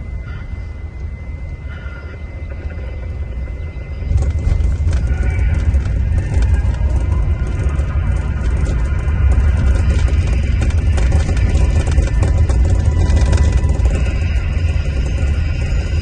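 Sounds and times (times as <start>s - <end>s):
coach rumbling inside cabin: 2.2s - 16.0s
rapid rattling clicks: 4.0s - 16.0s.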